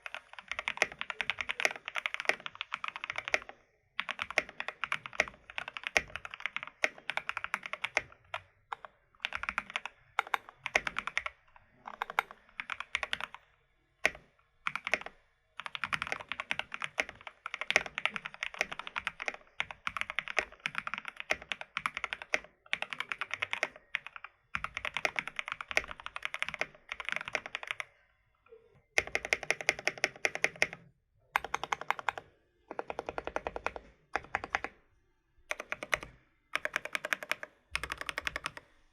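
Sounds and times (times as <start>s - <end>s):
mechanical keyboard typing: 0.0s - 27.9s, 29.0s - 34.8s, 35.5s - 38.7s.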